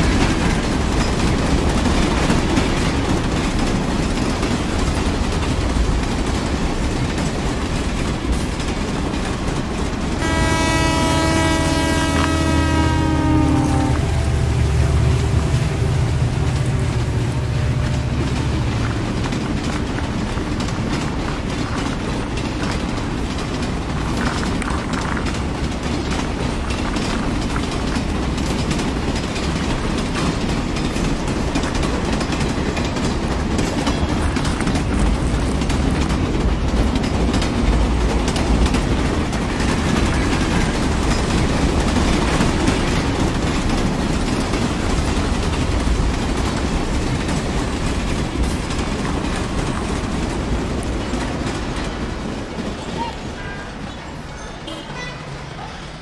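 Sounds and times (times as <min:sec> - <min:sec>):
train rumbling on track: 0:00.0 - 0:56.0
wheels clacking over rails: 0:00.0 - 0:56.0.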